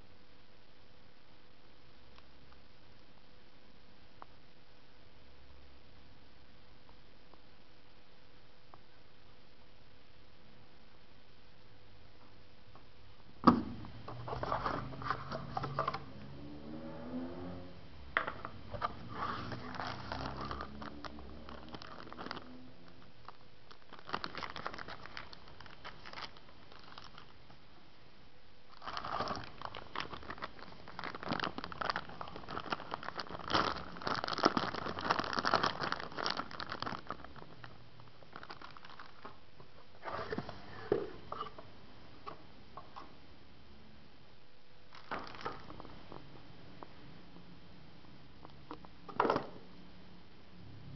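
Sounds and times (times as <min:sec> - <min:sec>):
packaging crinkling and rustling: 0:18.7 - 0:27.4, 0:28.7 - 0:39.4, 0:44.9 - 0:45.9
packaging tearing: 0:19.1 - 0:22.5, 0:23.7 - 0:27.4, 0:28.7 - 0:37.7, 0:38.3 - 0:39.4, 0:44.9 - 0:45.8.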